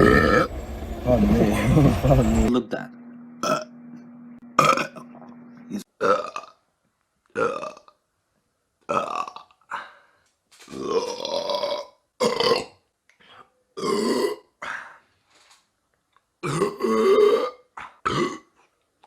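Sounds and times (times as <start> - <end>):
men burping: 3.4 - 3.7, 4.6 - 6.5, 10.8 - 12.7, 13.8 - 14.4, 16.4 - 18.6.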